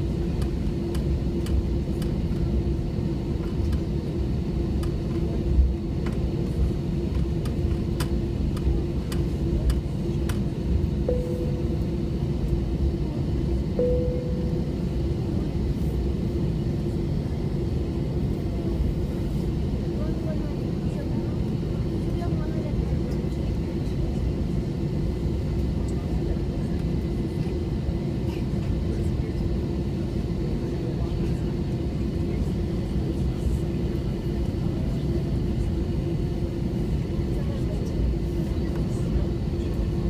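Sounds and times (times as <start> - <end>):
airliner cabin rumble: 0.0 - 40.0
short beeps: 11.1 - 12.0, 13.8 - 15.0.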